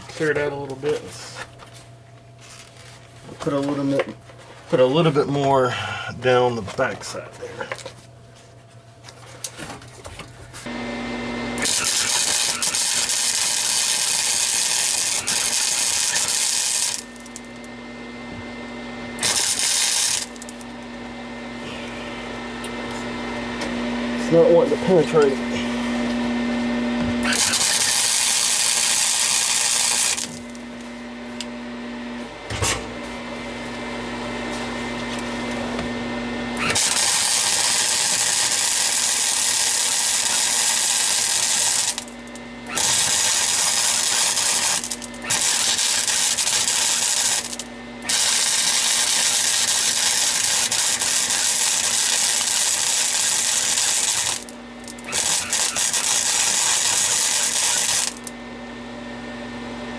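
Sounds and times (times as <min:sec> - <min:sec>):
welder humming: 0:10.6 - 0:59.9
welding arc crackling: 0:11.4 - 0:17.6, 0:19.1 - 0:20.8, 0:27.2 - 0:30.8, 0:36.6 - 0:58.4.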